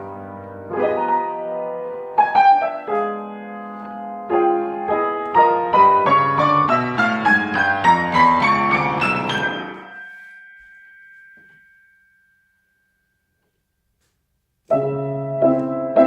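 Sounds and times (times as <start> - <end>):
piano music: 0.0 - 10.7, 14.7 - 16.0.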